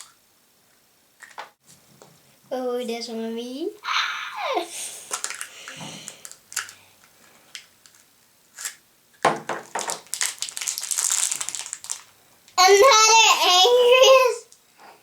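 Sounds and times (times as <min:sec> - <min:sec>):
wrapper crinkling and tearing: 0:05.1 - 0:12.2.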